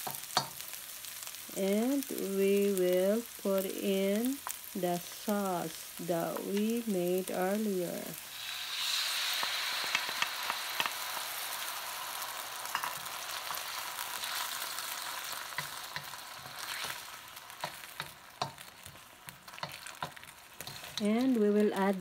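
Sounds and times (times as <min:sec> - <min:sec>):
vegetables sizzling in oil: 0:00.0 - 0:22.0
utensil clicking against pan: 0:17.6 - 0:21.3.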